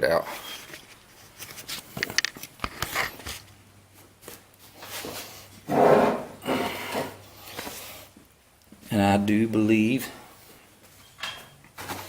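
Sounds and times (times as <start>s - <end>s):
parts rattling: 10.9s - 12.0s
tools clicking and knocking: 11.1s - 11.6s.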